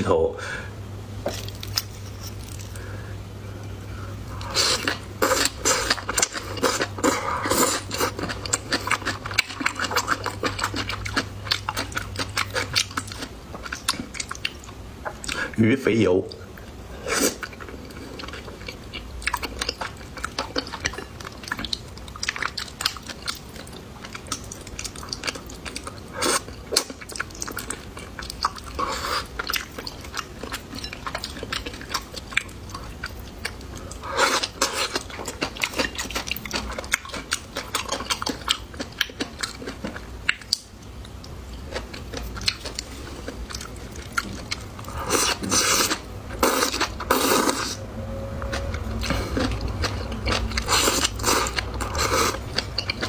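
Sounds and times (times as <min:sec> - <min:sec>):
chewing and crunching food: 0:01.2 - 0:03.0, 0:03.6 - 0:15.6, 0:16.3 - 0:47.8, 0:48.4 - 0:53.0.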